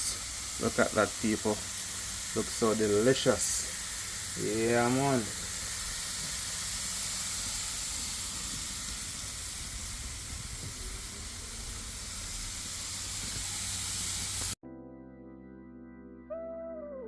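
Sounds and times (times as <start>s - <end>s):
steaks sizzling on a grill: 0.0s - 14.6s
keyboard music: 14.6s - 17.0s.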